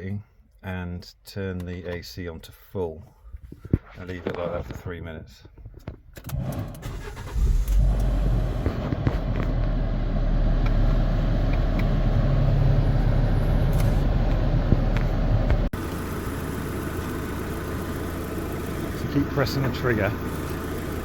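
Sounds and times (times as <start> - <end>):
car engine idling: 6.8 - 21.0.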